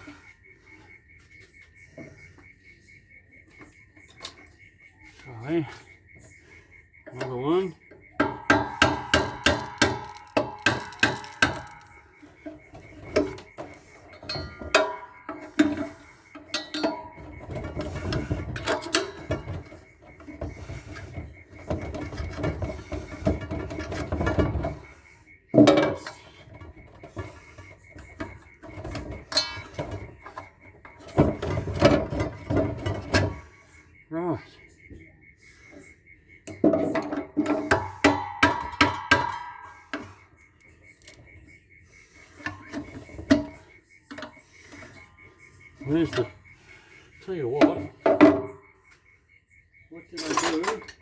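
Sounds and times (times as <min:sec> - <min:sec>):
metal scraping and clanking: 0:08.2 - 0:25.0.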